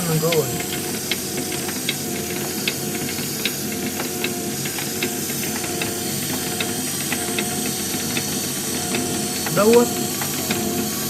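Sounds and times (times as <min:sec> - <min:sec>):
gear train clicks: 0:00.0 - 0:10.9
cooling fan hiss: 0:00.0 - 0:11.0
geared motor hum: 0:00.0 - 0:11.0.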